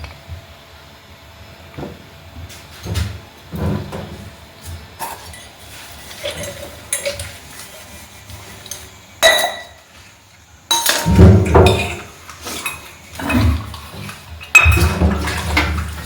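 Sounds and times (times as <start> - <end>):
ceramic dishes clinking: 9.2 - 9.8, 10.7 - 12.9.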